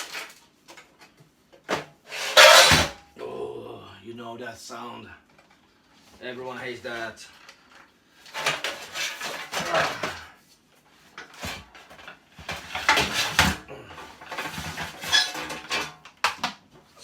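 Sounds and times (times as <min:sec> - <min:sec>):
metal scraping on metal case: 0:02.1 - 0:03.0, 0:14.3 - 0:15.9.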